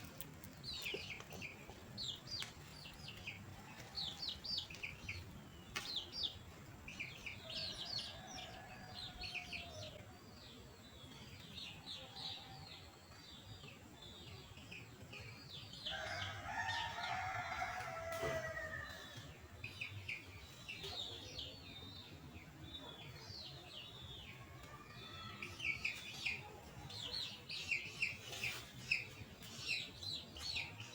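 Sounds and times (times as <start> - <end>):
small birds chirping: 0.0 - 30.9
rooster crowing: 15.9 - 19.3.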